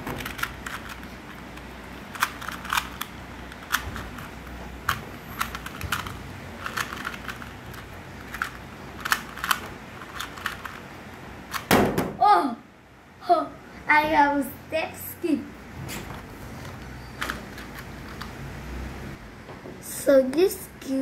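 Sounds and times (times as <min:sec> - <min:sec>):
plastic puzzle cube clicking: 0:00.2 - 0:10.9.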